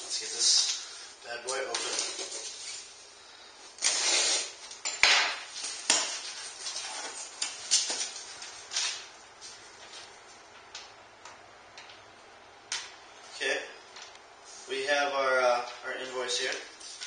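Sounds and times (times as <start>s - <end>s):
cardboard tearing: 3.8s - 4.6s.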